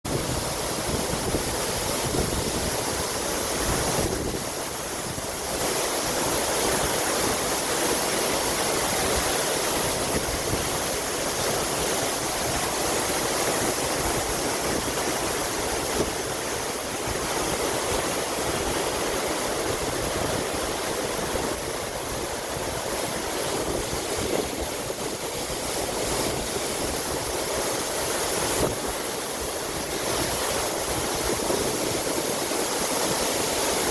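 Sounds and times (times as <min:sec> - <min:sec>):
waterfall rushing: 0:00.1 - 0:33.9.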